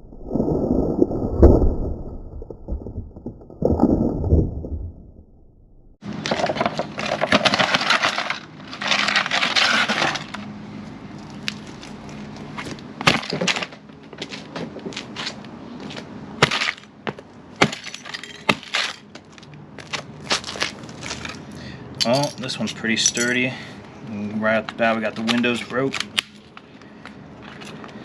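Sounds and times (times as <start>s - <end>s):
metal model crunching: 6.0s - 10.4s
sharp cracks and snaps: 25.2s - 26.9s.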